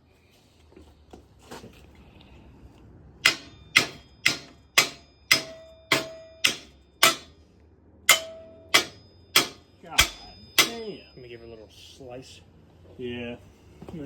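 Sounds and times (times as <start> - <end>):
hammer striking metal: 3.2 - 7.4, 8.1 - 11.3.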